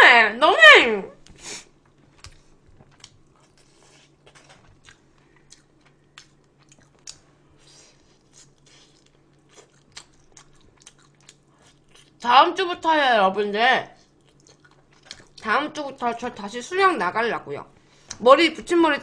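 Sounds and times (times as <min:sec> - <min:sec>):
faint low hum: 0:00.0 - 0:19.0
chewing and biting food: 0:02.1 - 0:12.2, 0:14.0 - 0:15.4.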